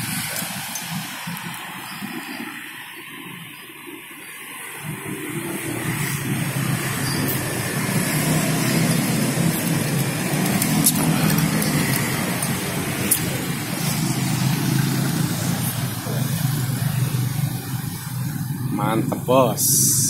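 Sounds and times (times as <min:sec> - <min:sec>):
vehicle engine approaching: 0:04.8 - 0:20.0.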